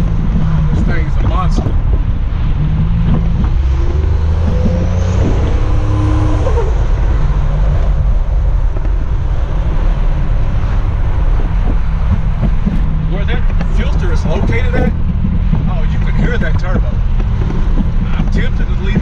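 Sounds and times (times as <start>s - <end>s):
car engine droning: 0.0s - 19.0s
turbo whine: 0.0s - 19.0s.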